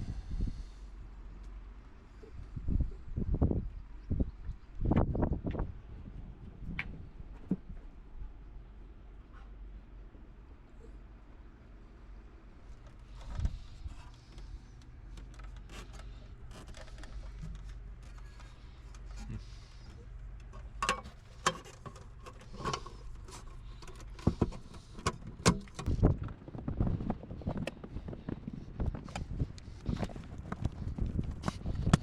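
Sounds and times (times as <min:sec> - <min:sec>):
steady low hum: 0:00.0 - 0:32.0
tools clicking and rattling: 0:20.4 - 0:26.0.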